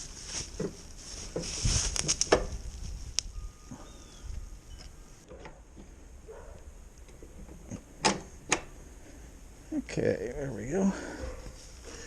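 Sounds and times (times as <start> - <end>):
rustling handling noise: 0.0 - 3.7, 11.0 - 12.0.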